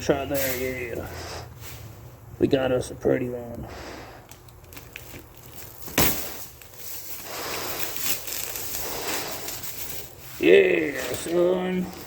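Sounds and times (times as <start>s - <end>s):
rustling crackling noise: 4.2s - 12.0s.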